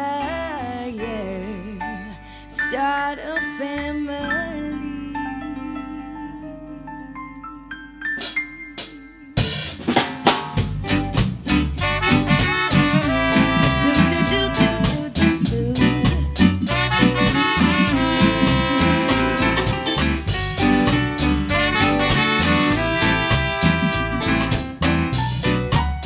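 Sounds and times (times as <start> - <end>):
reggae band playing: 8.2 - 26.0
drum hits: 9.4 - 15.5, 16.1 - 26.0.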